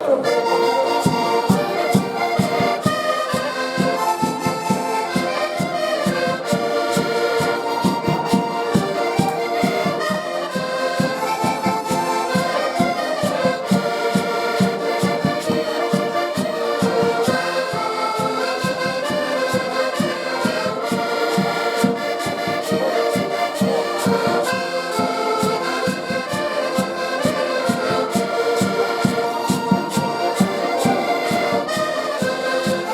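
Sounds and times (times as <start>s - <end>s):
accordion folk music: 0.0s - 32.9s.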